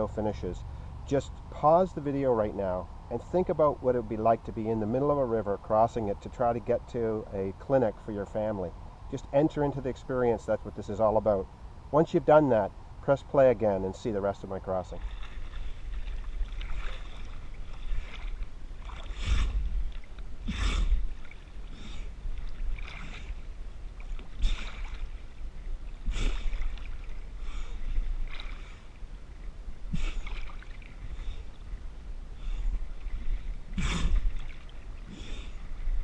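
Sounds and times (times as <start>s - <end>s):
steady low rumble: 0.0s - 36.0s
swimming strokes splashing: 14.9s - 31.8s, 32.5s - 36.0s.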